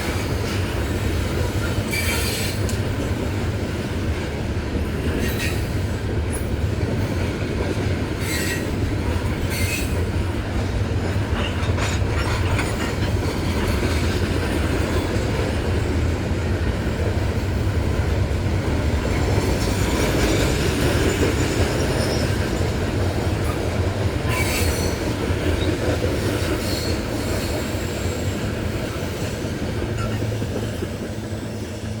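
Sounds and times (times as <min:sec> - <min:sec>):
train wheels rumbling on rail: 0:00.0 - 0:32.0
high wheel squeals: 0:24.3 - 0:25.0.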